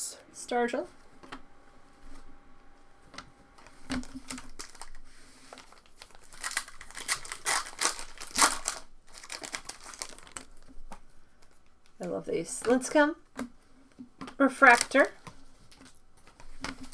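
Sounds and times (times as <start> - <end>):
foil wrapper crinkling and tearing: 3.6 - 12.0, 14.5 - 16.9.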